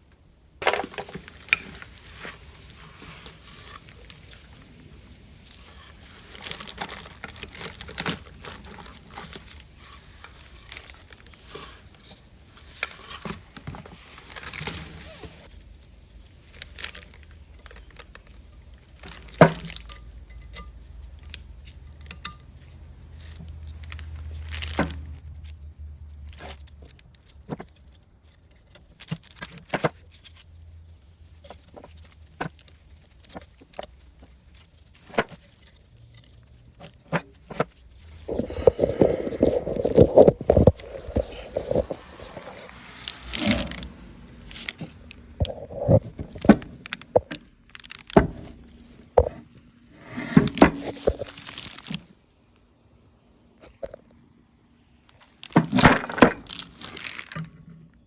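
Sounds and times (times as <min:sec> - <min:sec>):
rustling: 0:00.6 - 0:52.2, 0:55.0 - 0:57.6
metal parts and tools clinking: 0:14.2 - 0:25.6, 0:26.2 - 0:48.2.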